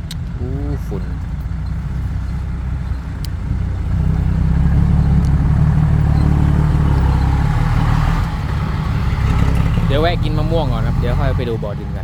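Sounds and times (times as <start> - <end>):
vehicle engine low rumble: 0.0 - 12.0.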